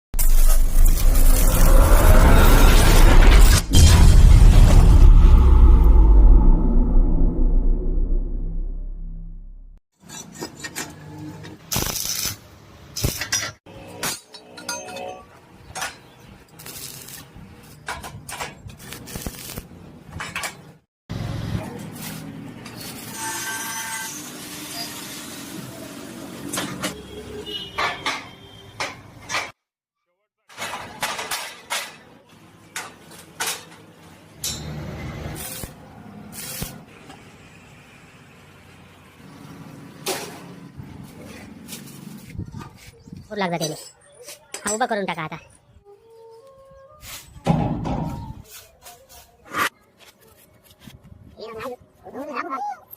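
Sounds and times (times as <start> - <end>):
steel pieces clinking and scraping: 13.0 - 19.6.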